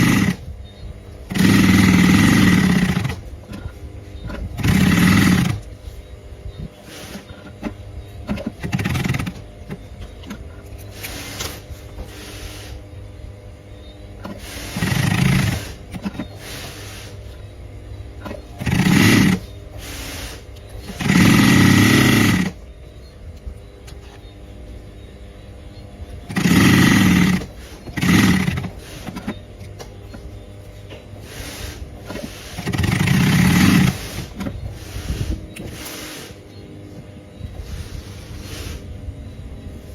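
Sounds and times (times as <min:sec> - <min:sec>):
sewing machine stitching: 0:00.0 - 0:00.4, 0:01.3 - 0:03.7, 0:04.3 - 0:05.7, 0:06.8 - 0:09.4, 0:14.2 - 0:17.2, 0:18.2 - 0:22.6, 0:26.3 - 0:29.4, 0:31.2 - 0:36.4.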